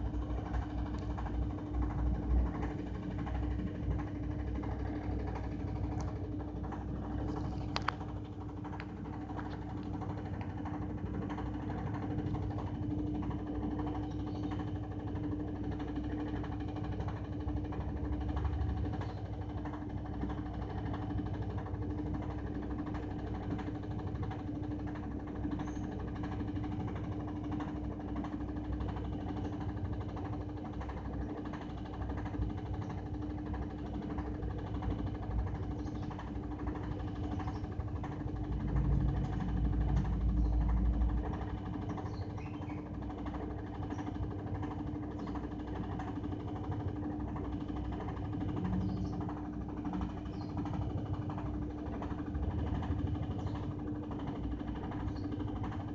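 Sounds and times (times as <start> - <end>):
washing machine running: 0.0 - 55.9
heavy low rumble: 37.8 - 41.6.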